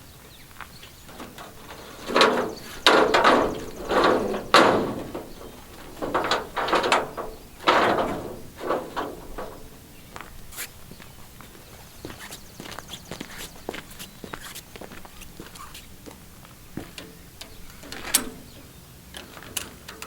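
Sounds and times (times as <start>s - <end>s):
loud ringing bangs and knocks: 1.1s - 9.9s.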